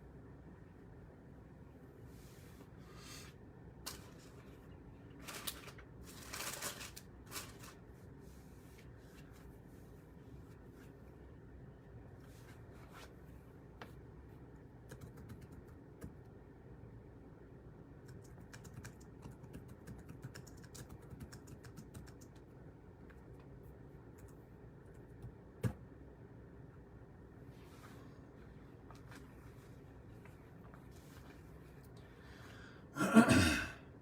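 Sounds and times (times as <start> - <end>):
typing on computer keyboard: 14.8 - 16.2, 18.0 - 22.5.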